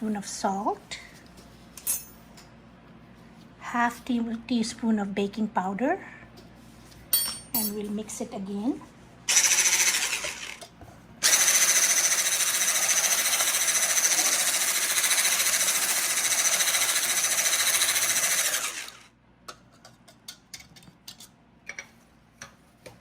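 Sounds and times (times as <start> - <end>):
electric mixer whirring: 9.3 - 10.6, 11.2 - 19.1.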